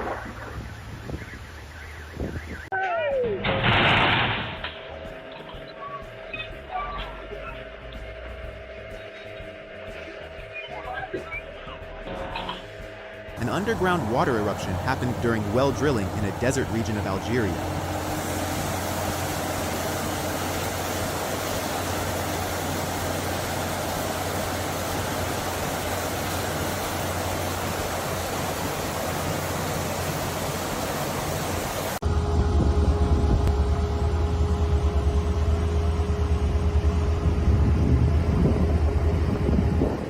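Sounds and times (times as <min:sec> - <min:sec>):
low hum: 0:03.4 - 0:40.0
water roaring from the ground: 0:13.4 - 0:32.0
low rumbling: 0:32.0 - 0:40.0.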